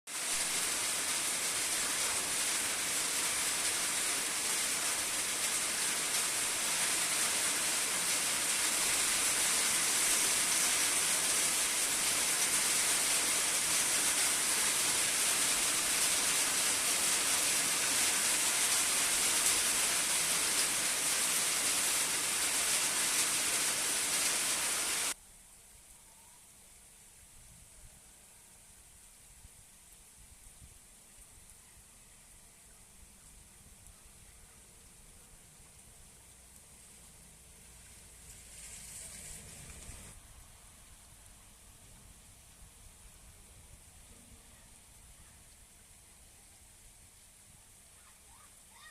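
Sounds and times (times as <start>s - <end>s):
heavy rain hiss: 0.1s - 25.2s, 34.5s - 47.7s.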